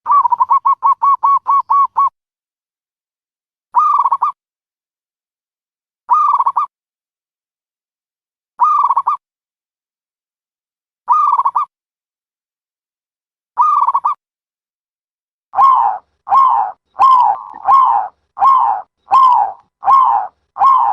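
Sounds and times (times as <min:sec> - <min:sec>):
dove cooing: 0:15.6 - 0:20.9.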